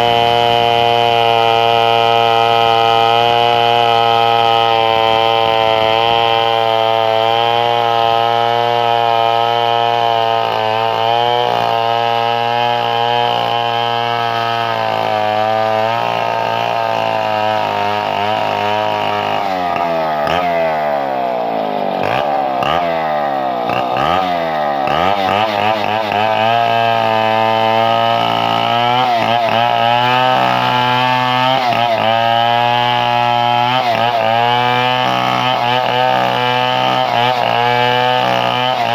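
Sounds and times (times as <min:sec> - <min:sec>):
chainsaw cutting timber: 0:00.0 - 0:38.9.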